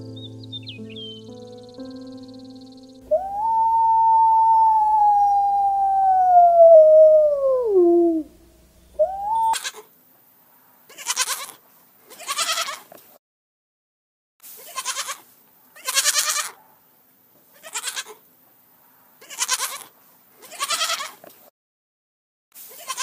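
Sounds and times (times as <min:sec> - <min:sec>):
goat bleating: 0:10.9 - 0:12.8, 0:14.6 - 0:15.2, 0:15.8 - 0:16.6, 0:17.6 - 0:18.2, 0:19.3 - 0:21.2, 0:22.8 - 0:23.0.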